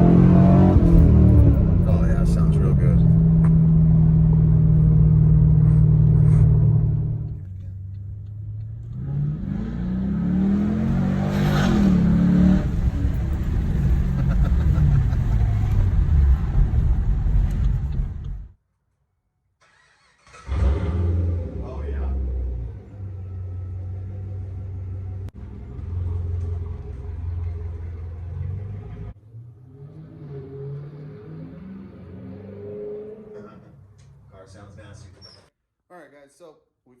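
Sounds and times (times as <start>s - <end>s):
car engine revving loudly: 0.0s - 7.2s, 8.9s - 14.6s, 20.4s - 22.7s, 29.6s - 33.6s.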